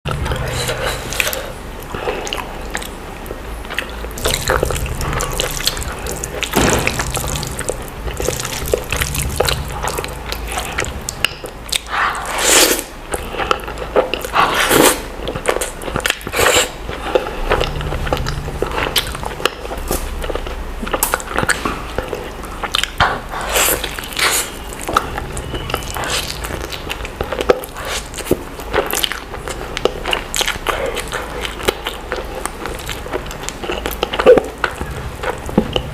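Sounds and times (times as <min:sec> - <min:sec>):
low hum: 0:00.1 - 0:27.8
person slurping and chewing noodles: 0:00.1 - 0:35.9.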